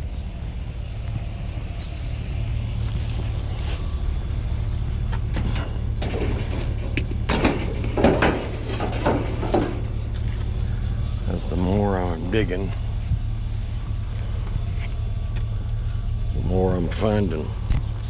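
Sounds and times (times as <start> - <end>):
vehicle engine idling hum: 0.0 - 18.0
items rustling and clattering: 5.0 - 10.5.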